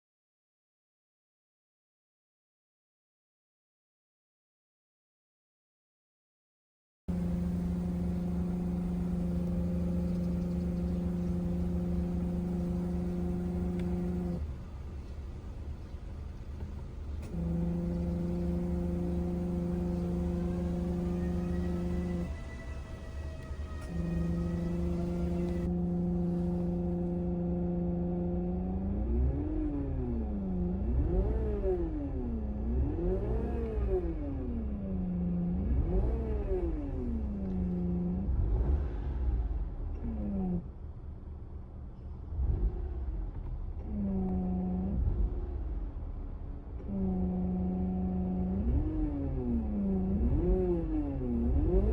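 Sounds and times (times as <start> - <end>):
car engine revving: 7.1 - 41.1, 42.1 - 51.9
low drone: 17.2 - 27.1.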